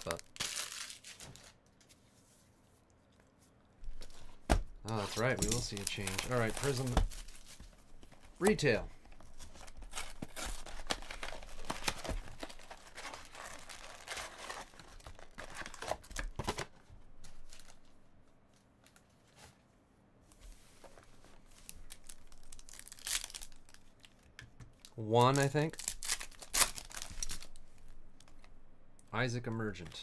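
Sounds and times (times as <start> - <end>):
wrappers torn and crinkled: 0.0 - 1.8, 4.9 - 7.6, 9.3 - 16.4, 21.7 - 24.2, 24.8 - 27.6
cards rustling: 0.0 - 2.2, 3.8 - 17.9, 20.9 - 24.2, 24.8 - 28.5.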